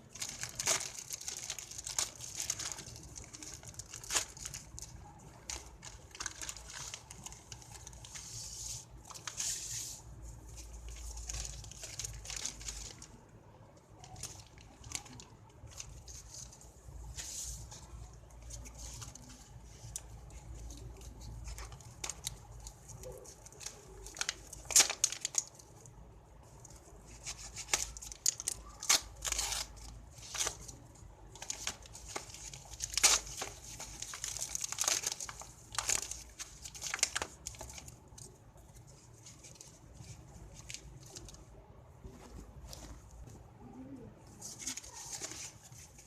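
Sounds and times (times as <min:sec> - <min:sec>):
loud ripping of wrapping: 0:00.1 - 0:04.9, 0:23.0 - 0:25.6, 0:27.1 - 0:30.8, 0:31.4 - 0:38.2
packaging crinkling and tearing: 0:00.1 - 0:09.8, 0:10.5 - 0:13.2, 0:14.0 - 0:17.7, 0:18.4 - 0:25.9, 0:26.7 - 0:41.4, 0:44.4 - 0:46.0.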